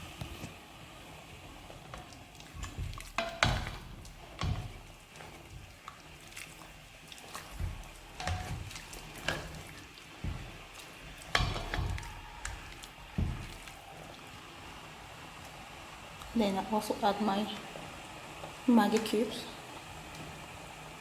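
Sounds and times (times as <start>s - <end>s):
utensils and containers knocking: 2.6s - 5.7s, 7.4s - 13.8s.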